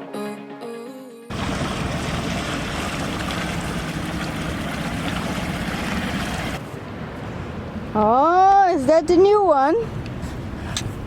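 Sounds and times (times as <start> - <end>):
water noise: 1.3 - 7.1.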